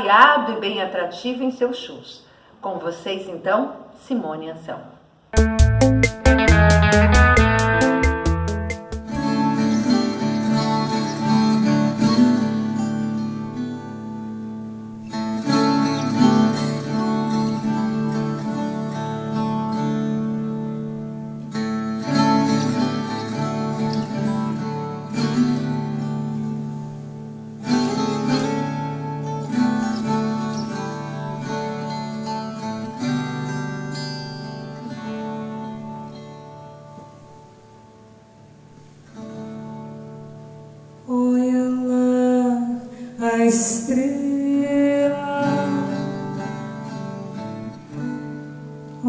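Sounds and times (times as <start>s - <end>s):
acoustic string chords: 5.4s - 9.8s
woman singing: 41.1s - 46.4s.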